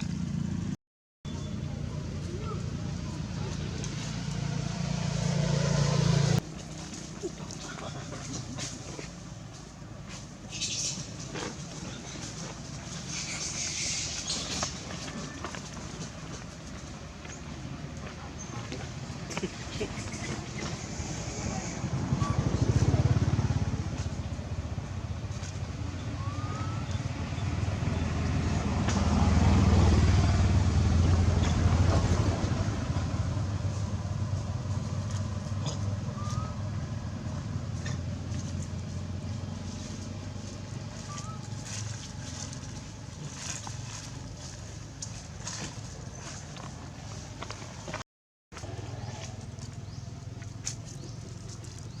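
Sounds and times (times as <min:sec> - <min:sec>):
passing vehicles engine rumble: 0:00.0 - 0:48.0, 0:48.6 - 0:52.0
faint bird chirps: 0:01.3 - 0:01.8, 0:25.9 - 0:28.1, 0:36.1 - 0:36.6, 0:41.0 - 0:41.5.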